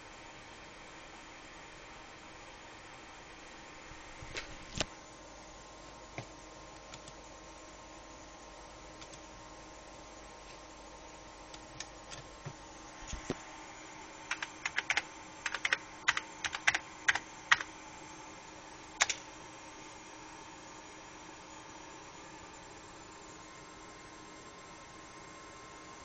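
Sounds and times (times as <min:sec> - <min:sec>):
computer fans humming: 0:00.0 - 0:26.0
computer keyboard keystrokes: 0:06.9 - 0:07.2, 0:09.0 - 0:09.2, 0:14.3 - 0:17.7, 0:19.0 - 0:19.2.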